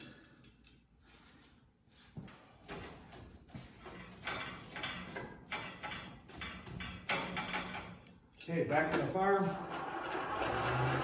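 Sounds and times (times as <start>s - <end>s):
hand-cranked blower whooshing: 9.4s - 11.0s.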